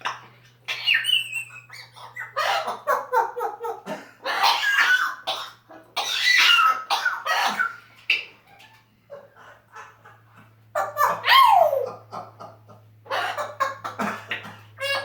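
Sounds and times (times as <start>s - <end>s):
parrot squawking and whistling: 0.0s - 2.8s.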